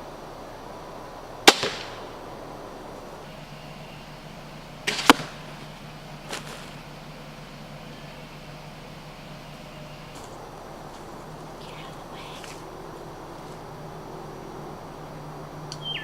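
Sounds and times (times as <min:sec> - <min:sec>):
crossbow shot snap: 0:01.5 - 0:02.2, 0:04.9 - 0:05.5.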